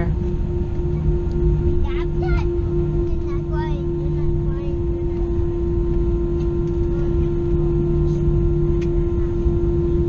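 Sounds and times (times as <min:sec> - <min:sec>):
aircraft cabin rumble: 0:00.0 - 0:10.0
mid-pitched hum: 0:00.0 - 0:10.0.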